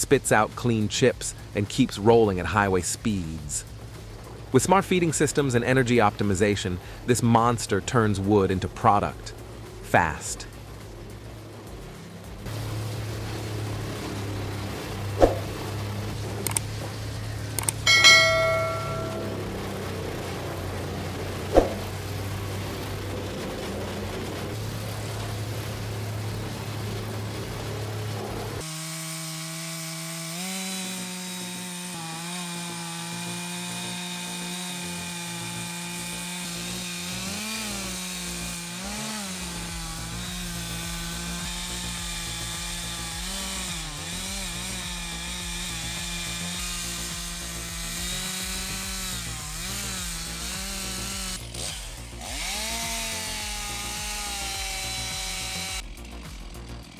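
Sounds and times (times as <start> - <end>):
engine-driven cutting machine: 0.0 - 56.9
machinery low hum: 9.3 - 28.6
sharp metallic clang: 17.8 - 19.5.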